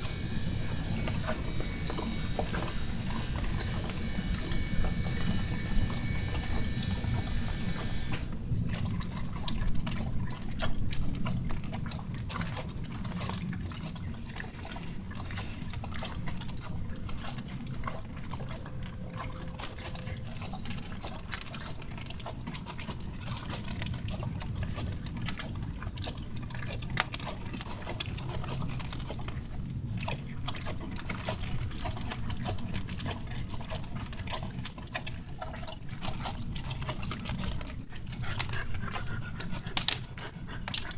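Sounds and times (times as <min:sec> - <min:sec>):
high-pitched steady tone: 0:00.0 - 0:08.1
horse chewing: 0:00.0 - 0:40.9.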